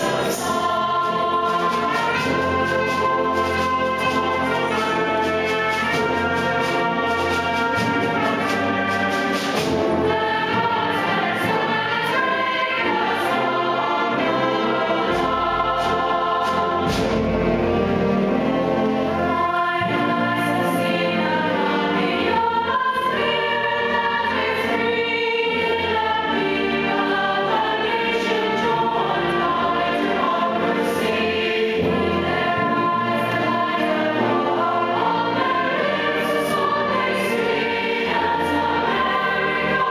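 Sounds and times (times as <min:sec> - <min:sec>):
choir singing: 0:00.0 - 0:39.9
orchestra with brass: 0:00.0 - 0:39.9.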